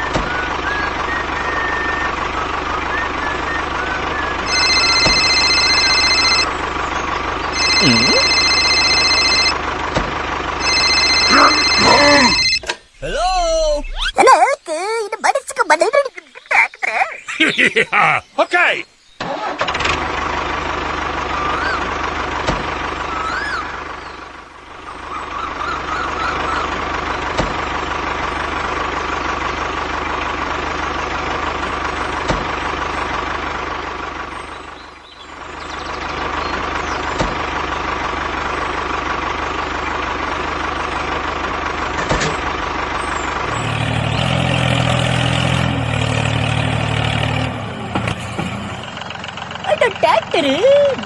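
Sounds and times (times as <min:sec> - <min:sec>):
model tractor motor whining: 0:00.2 - 0:12.9
lower-pitched sound: 0:10.6 - 0:14.2.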